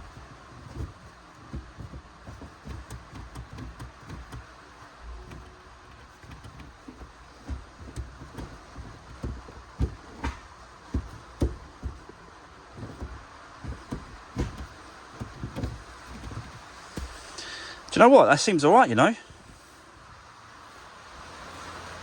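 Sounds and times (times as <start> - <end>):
gear lever clunks and clicks: 0.0 - 17.5.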